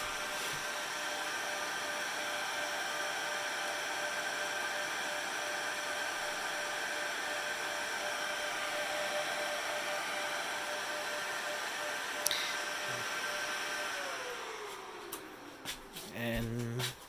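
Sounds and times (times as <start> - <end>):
server cooling fans whining: 0.0 - 17.0.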